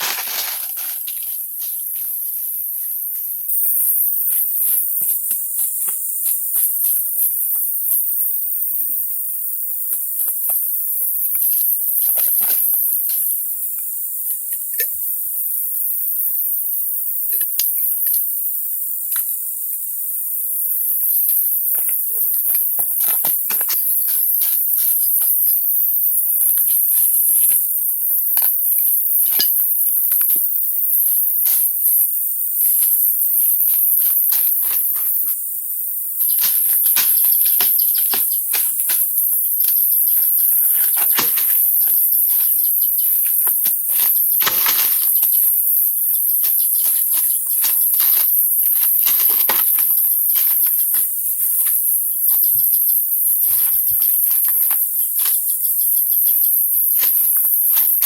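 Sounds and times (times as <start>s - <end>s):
high-pitched insect chorus: 0.0s - 58.0s.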